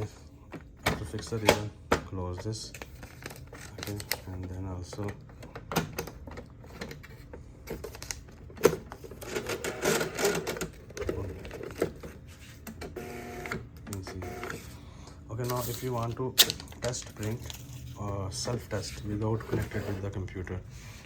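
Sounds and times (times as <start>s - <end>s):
printer buzzing mechanical rattle: 2.5s - 14.8s.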